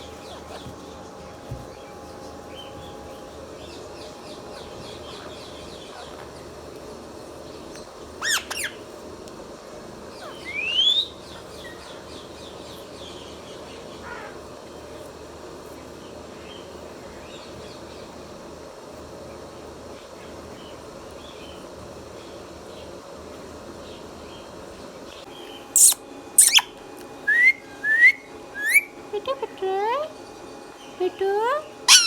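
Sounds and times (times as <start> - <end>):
faint bird chirping: 0.0 - 9.0, 9.6 - 32.0
parakeet squawks: 4.5 - 6.5, 8.2 - 8.9, 25.8 - 26.7
parakeet rising whistle: 8.2 - 8.8, 10.2 - 11.1, 25.8 - 26.7, 27.3 - 29.0.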